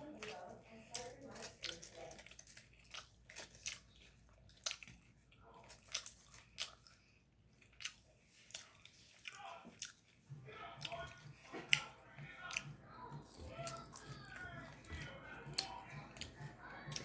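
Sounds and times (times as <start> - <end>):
person chewing and crunching food: 0.0 - 17.0
wet mouth clicks: 10.8 - 17.0.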